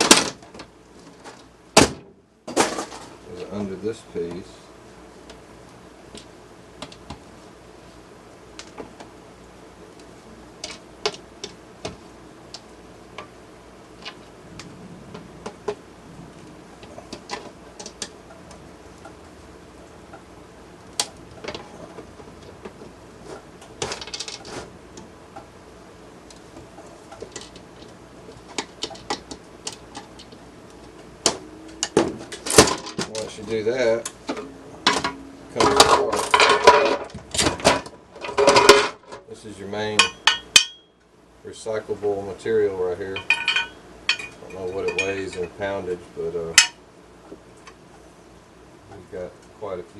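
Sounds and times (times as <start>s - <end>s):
rattling clatter of parts: 0.0s - 3.6s, 21.3s - 24.7s, 31.3s - 33.6s, 34.3s - 39.3s, 43.1s - 45.6s.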